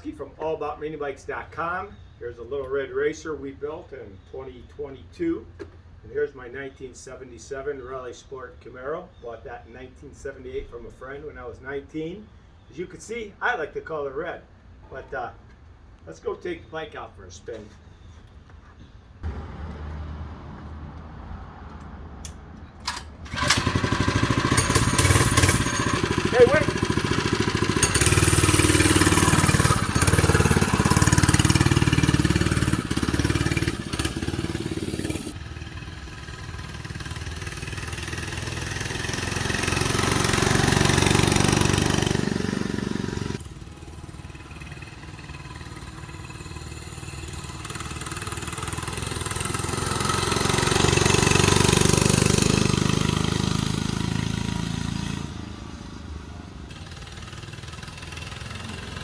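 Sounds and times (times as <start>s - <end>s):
mini bike engine running: 22.9s - 55.8s, 56.7s - 59.0s.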